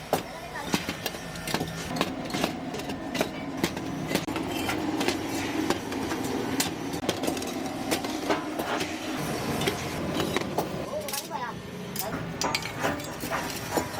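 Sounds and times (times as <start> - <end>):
metal clanks and taps: 0.8 - 8.9, 12.0 - 13.9.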